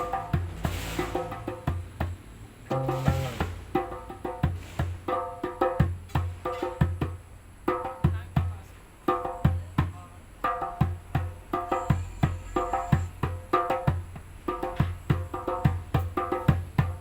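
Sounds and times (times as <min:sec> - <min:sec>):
low percussive thump: 0:00.0 - 0:05.1.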